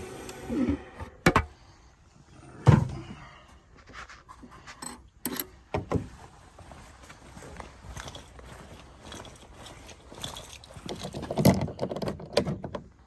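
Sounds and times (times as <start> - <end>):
keys clinking: 6.7 - 11.4.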